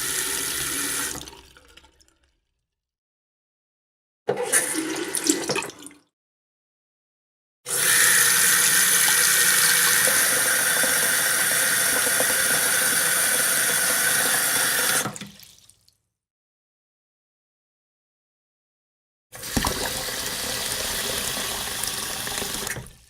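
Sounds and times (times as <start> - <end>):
short water sound: 19.4 - 23.0.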